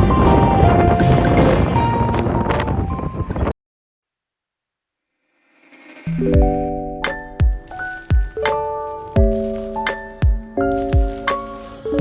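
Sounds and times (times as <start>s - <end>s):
melody over steady beat: 6.1s - 11.5s.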